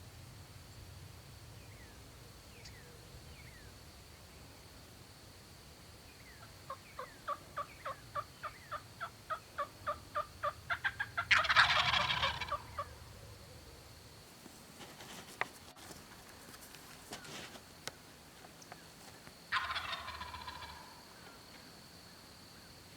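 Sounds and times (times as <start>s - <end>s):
turkey yelps: 6.7s - 13.0s, 19.5s - 21.0s
turkey gobble: 6.7s - 13.3s, 19.5s - 21.4s.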